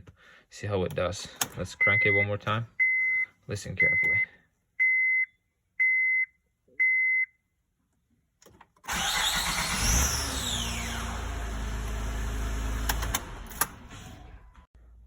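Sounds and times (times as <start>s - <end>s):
dashboard chime beeps: 1.8s - 7.3s
car engine cranking and starting: 8.6s - 14.7s.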